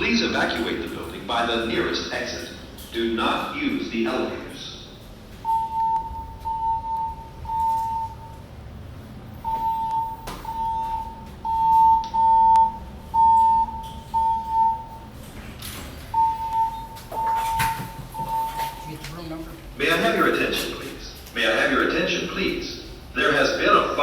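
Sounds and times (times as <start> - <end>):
fire alarm beeps: 5.3 - 8.6, 9.4 - 19.2.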